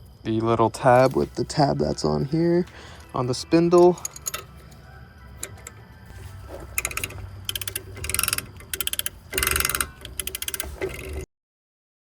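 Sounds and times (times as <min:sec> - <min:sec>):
socket ratchet clicking: 0:06.8 - 0:11.2.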